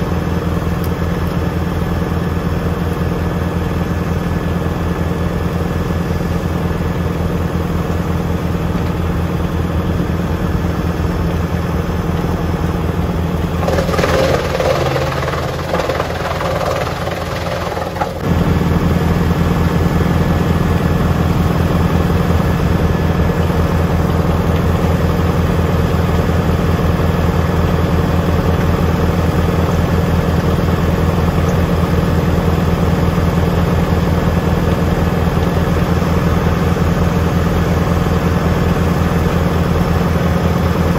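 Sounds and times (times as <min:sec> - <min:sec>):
wood chipper drone: 0:00.0 - 0:40.9.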